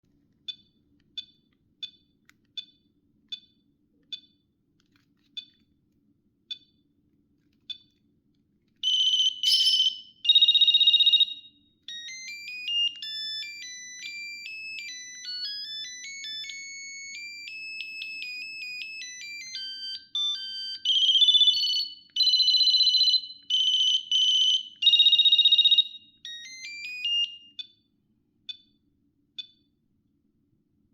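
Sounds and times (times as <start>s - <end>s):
monophonic ringtone melody: 8.8s - 27.6s.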